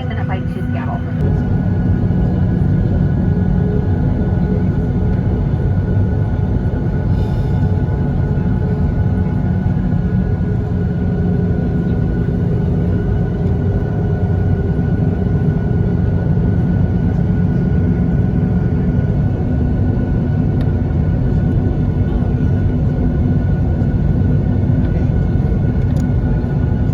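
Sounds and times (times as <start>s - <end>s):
airplane cabin engine rumble: 0.0s - 26.9s.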